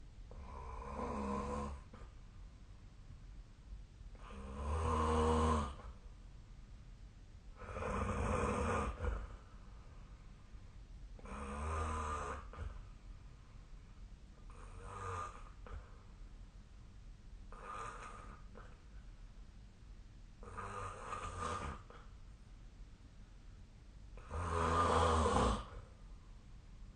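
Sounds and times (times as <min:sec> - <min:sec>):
buzzing snores: 0:00.3 - 0:02.0, 0:04.2 - 0:05.9, 0:07.6 - 0:09.4, 0:11.2 - 0:12.8, 0:14.5 - 0:15.8, 0:17.5 - 0:18.8, 0:20.4 - 0:22.0, 0:24.2 - 0:25.9.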